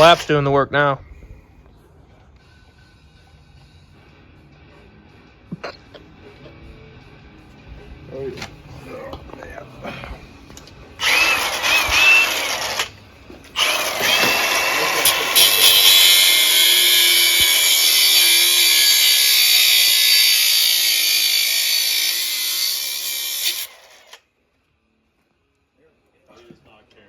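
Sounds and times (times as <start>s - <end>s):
angle grinder grinding steel: 11.0s - 24.2s.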